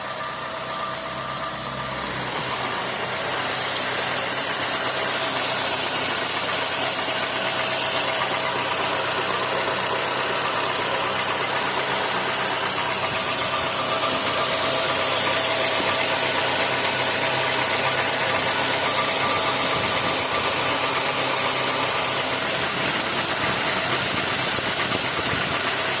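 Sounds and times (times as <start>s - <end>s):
car engine idling: 0.0s - 26.0s
engine mechanical knocking: 0.0s - 26.0s.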